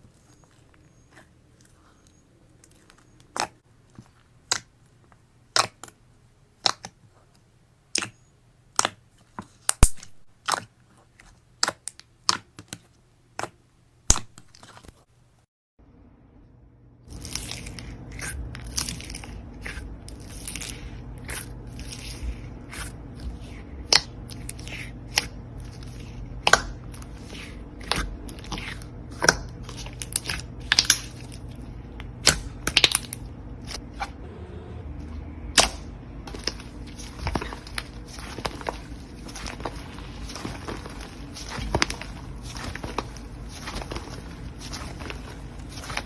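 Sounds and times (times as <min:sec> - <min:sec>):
steady low hum: 0:14.4 - 0:46.0.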